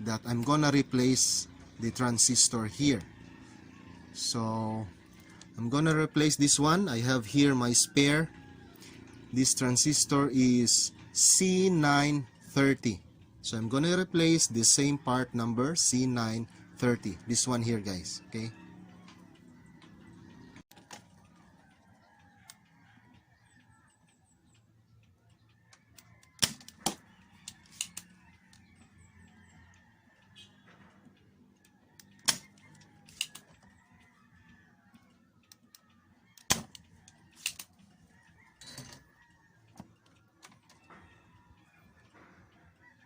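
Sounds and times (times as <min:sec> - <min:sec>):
sharp clicks: 0:23.6 - 0:28.8, 0:29.6 - 0:42.1.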